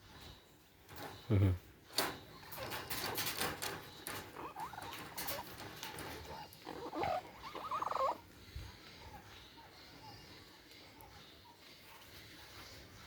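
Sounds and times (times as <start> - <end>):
parrot squeaky chirps: 6.3 - 8.2.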